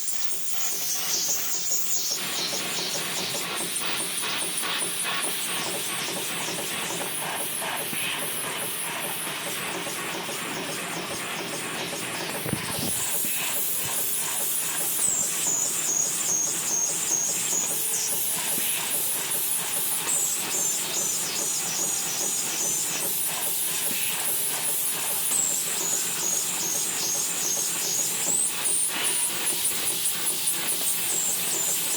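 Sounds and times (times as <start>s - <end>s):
machine running with clatter: 0.0s - 31.9s
high machine whine: 9.4s - 31.9s.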